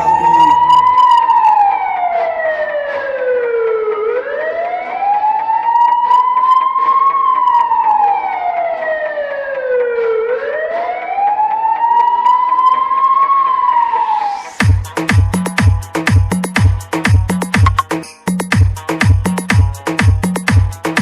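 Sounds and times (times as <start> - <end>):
siren wail: 0.0 - 14.6.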